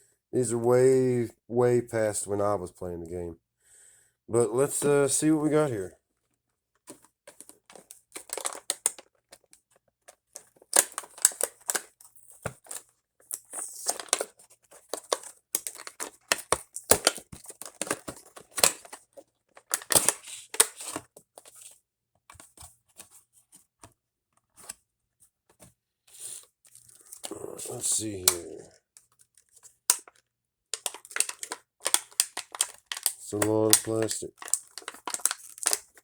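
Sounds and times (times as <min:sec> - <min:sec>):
plastic packaging crinkling and tearing: 0:07.3 - 0:09.5, 0:10.4 - 0:21.7, 0:26.2 - 0:28.7, 0:29.3 - 0:36.0.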